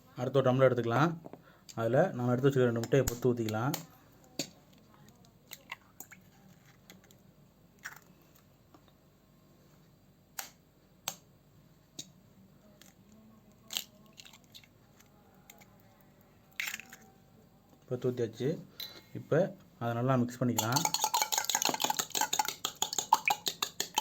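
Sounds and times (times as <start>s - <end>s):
eggshells cracking: 13.6s - 14.7s, 16.6s - 17.1s, 20.6s - 24.0s.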